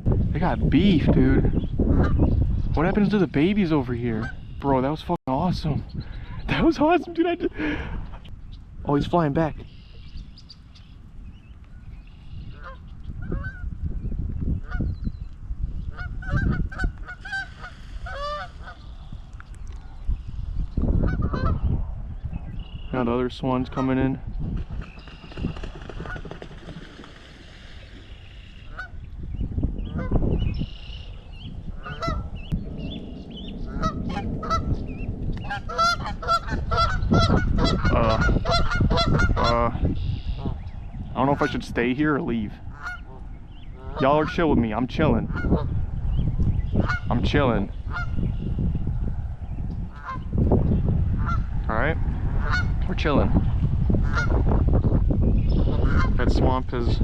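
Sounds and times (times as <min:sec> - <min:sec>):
geese honking: 0:04.1 - 0:04.9, 0:12.4 - 0:13.6, 0:15.9 - 0:19.0, 0:21.0 - 0:21.6, 0:28.0 - 0:29.0, 0:31.8 - 0:32.3, 0:33.6 - 0:34.8, 0:35.4 - 0:42.0, 0:42.7 - 0:44.6, 0:45.2 - 0:45.7, 0:46.8 - 0:47.1, 0:47.8 - 0:48.2, 0:49.9 - 0:50.2, 0:51.2 - 0:51.5, 0:52.4 - 0:52.8, 0:54.0 - 0:54.4, 0:55.6 - 0:56.2.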